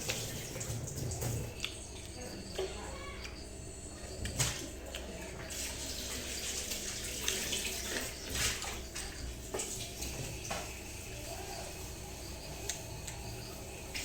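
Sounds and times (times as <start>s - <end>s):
wet slurpy eating: 0.0s - 10.2s.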